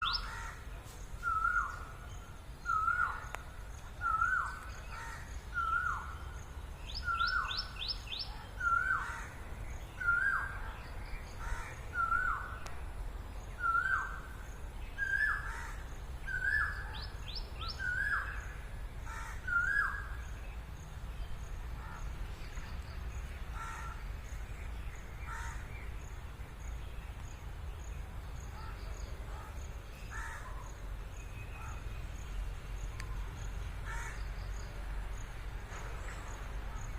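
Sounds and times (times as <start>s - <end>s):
peacock calling: 0.0s - 6.3s, 6.9s - 9.4s, 10.0s - 12.7s, 13.6s - 14.4s, 15.0s - 20.2s
outdoor background noise: 0.0s - 36.9s.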